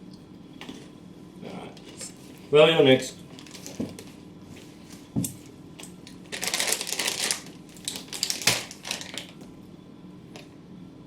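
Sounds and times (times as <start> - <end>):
crunchy snacks crackling: 5.9 - 9.4.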